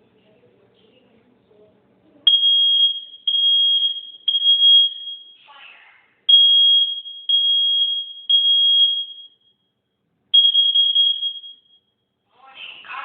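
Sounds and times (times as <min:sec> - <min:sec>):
smoke detector beeping: 0:02.3 - 0:05.4, 0:06.3 - 0:12.0.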